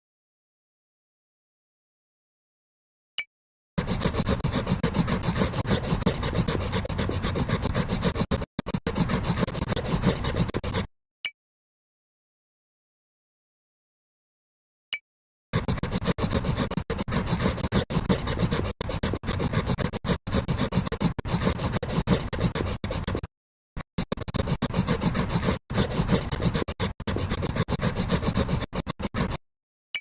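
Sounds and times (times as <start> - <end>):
drawing tool scratching paper: 3.8 - 10.9, 15.6 - 29.4.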